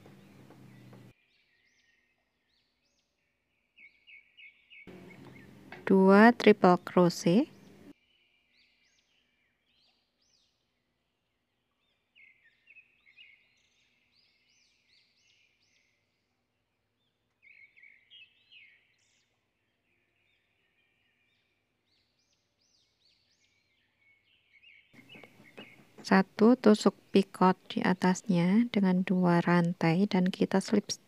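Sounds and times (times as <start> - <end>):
faint small birds chirping: 0.0 - 31.0.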